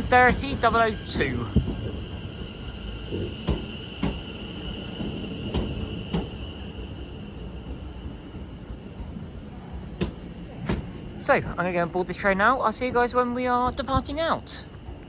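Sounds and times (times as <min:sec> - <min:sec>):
electric train whine: 0:00.0 - 0:15.0.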